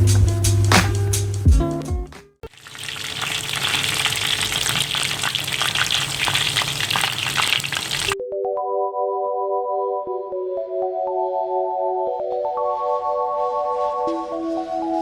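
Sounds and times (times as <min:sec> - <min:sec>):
music: 0:00.0 - 0:02.5, 0:08.2 - 0:15.0
food sizzling in hot oil: 0:02.5 - 0:08.2.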